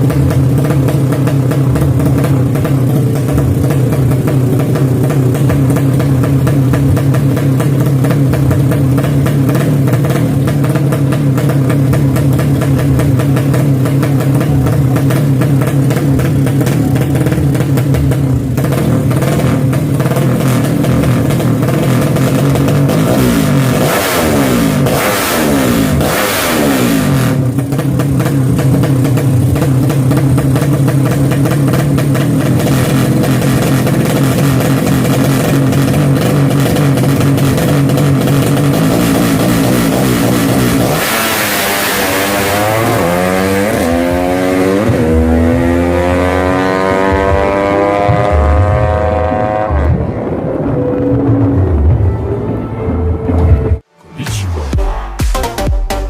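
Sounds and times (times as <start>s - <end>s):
motorcycle engines revving loudly: 0.0s - 52.6s.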